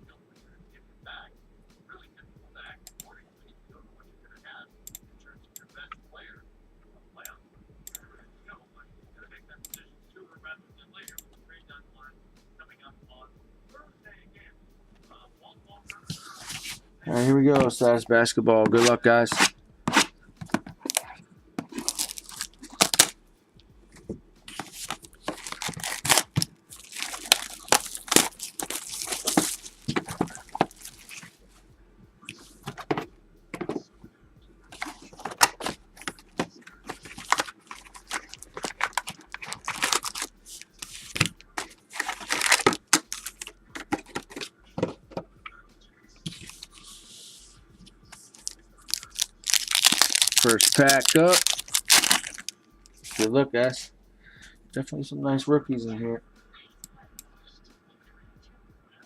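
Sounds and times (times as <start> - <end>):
plastic wrap crinkling and tearing: 18.7 - 20.1, 20.8 - 23.1, 24.5 - 31.4, 34.7 - 44.5, 46.3 - 47.0, 48.1 - 53.3
sharp crackles: 48.2 - 53.3.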